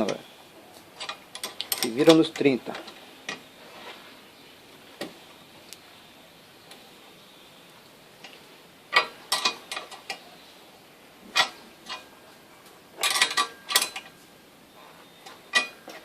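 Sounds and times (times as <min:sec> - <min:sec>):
metal tools clinking: 0:01.0 - 0:03.5, 0:13.0 - 0:14.2.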